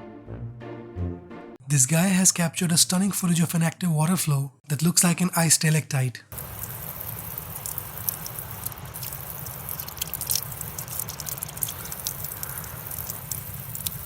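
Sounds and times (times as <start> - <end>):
water flowing and dripping: 6.3 - 14.0.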